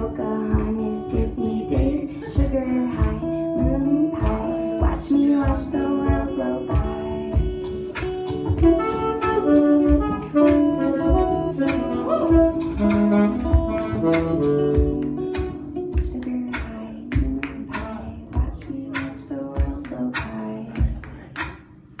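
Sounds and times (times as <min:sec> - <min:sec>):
saxophone melody: 0:00.0 - 0:16.0
beatboxed drum beat: 0:00.0 - 0:22.0
guitar: 0:00.0 - 0:22.0.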